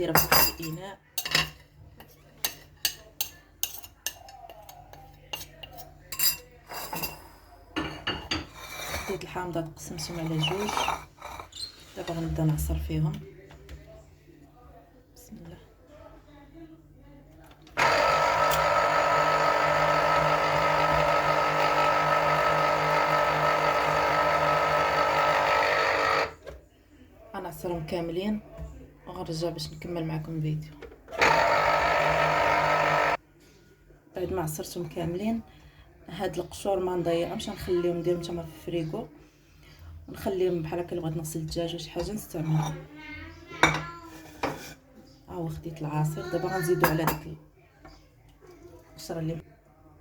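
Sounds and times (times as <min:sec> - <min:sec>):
electric juicer motor hum: 0:17.7 - 0:26.4, 0:31.1 - 0:33.2.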